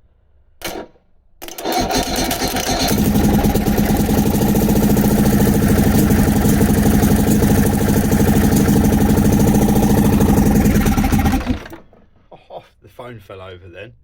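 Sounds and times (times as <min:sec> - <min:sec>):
outboard motor running: 0:02.1 - 0:12.0.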